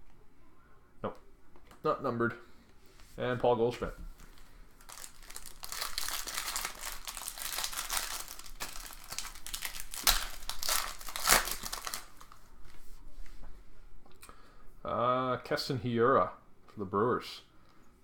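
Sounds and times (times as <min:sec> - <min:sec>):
foil wrapper crinkling and tearing: 0:04.8 - 0:12.4.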